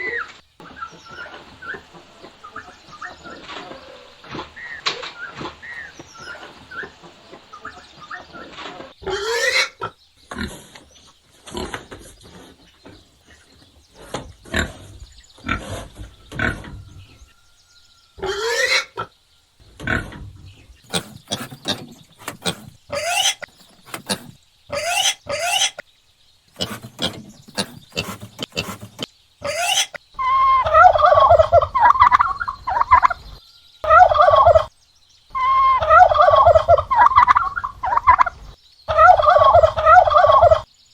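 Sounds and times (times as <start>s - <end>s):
rapid warbling bird calls: 18.2s - 25.8s, 26.5s - 34.7s
upward sweeping bird calls: 20.5s - 25.8s, 26.6s - 34.7s.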